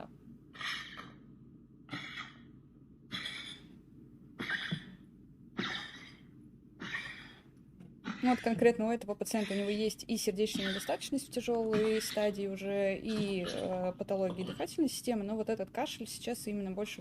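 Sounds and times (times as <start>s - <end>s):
dog honking cough: 4.4s - 4.9s, 5.6s - 6.2s, 6.8s - 7.4s.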